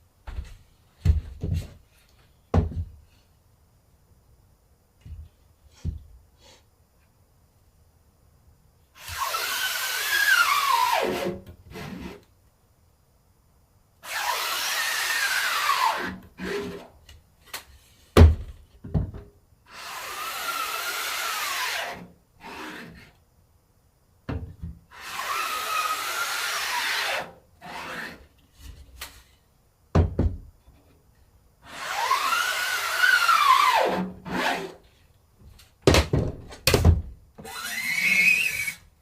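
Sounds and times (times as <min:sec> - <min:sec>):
squeak rising and falling: 0:37.5 - 0:38.8.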